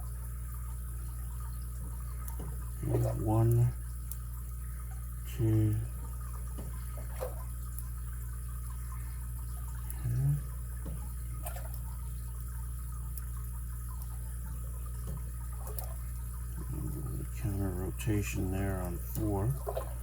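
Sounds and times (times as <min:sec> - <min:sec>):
steady low hum: 0:00.0 - 0:20.0
person humming: 0:10.0 - 0:10.5, 0:16.6 - 0:17.3.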